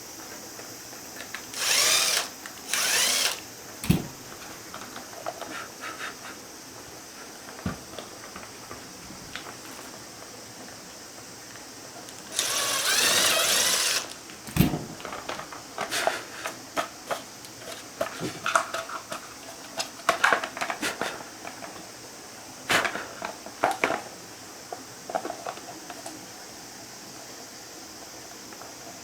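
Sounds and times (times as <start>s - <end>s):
small electric motor running: 1.2s - 4.4s, 12.2s - 14.7s
clicks and knocks of parts: 1.2s - 5.5s.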